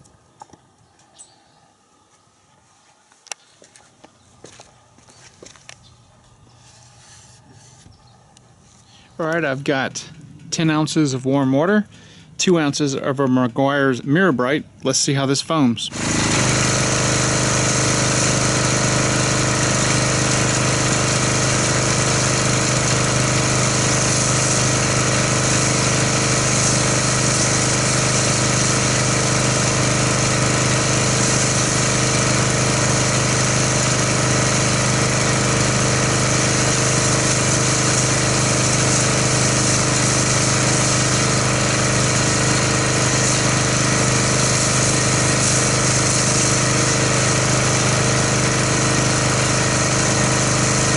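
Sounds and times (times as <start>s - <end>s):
foam cannon spray hiss: 15.9s - 50.9s
pressure washer motor hum: 15.9s - 50.9s.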